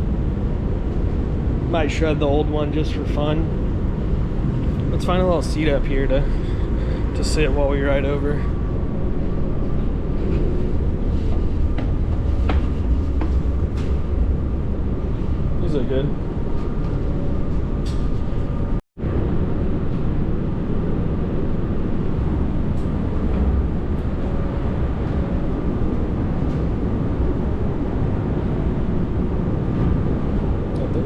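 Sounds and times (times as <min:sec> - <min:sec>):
faint steady hum: 0:00.0 - 0:31.0
ship engines rumbling: 0:00.0 - 0:31.0.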